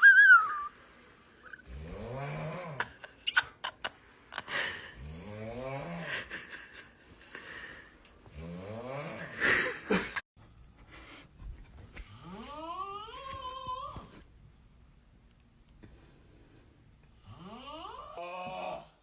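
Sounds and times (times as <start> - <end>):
person snoring: 1.6 - 2.9, 4.5 - 6.3, 8.3 - 9.8.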